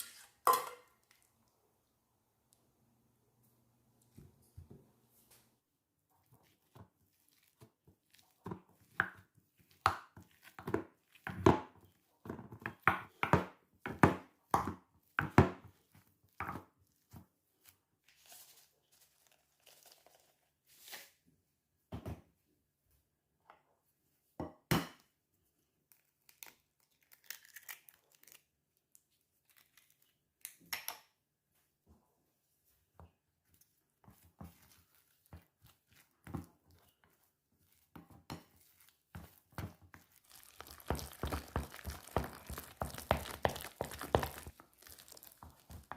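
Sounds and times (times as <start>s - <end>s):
crunching scraping food strokes: 34.4s - 45.9s.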